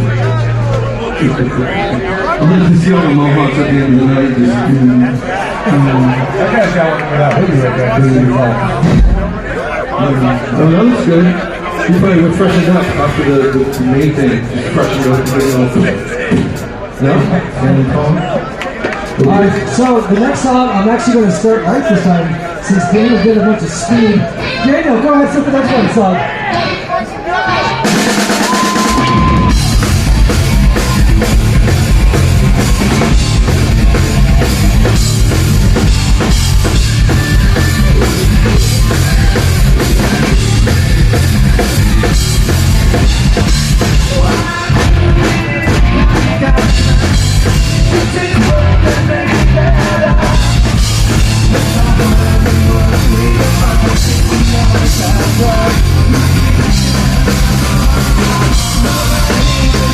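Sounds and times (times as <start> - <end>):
punk rock band playing: 0.0 - 6.7, 27.5 - 59.9
drum kit: 27.6 - 59.9.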